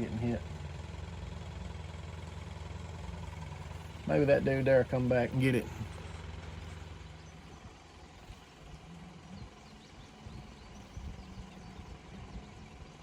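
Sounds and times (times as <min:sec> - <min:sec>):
low motor hum: 0:00.0 - 0:13.0.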